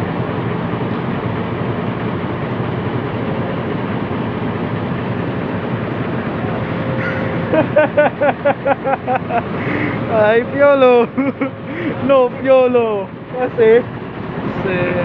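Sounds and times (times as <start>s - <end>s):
heavy diesel engine running: 0.0s - 15.0s
short pitched sounds: 5.7s - 8.1s.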